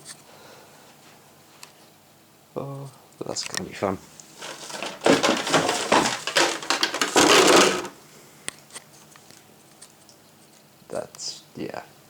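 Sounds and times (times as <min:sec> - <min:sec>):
packaging crinkling: 0:04.4 - 0:07.9.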